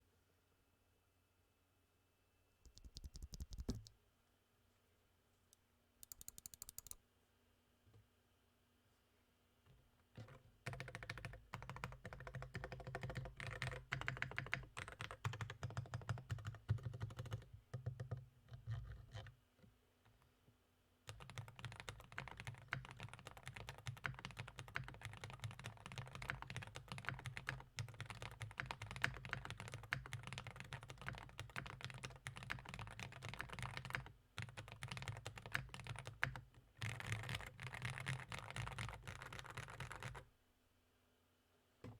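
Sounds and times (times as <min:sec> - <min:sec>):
mechanical keyboard typing: 0:02.7 - 0:03.9, 0:06.0 - 0:07.0, 0:10.6 - 0:18.2, 0:21.1 - 0:40.2.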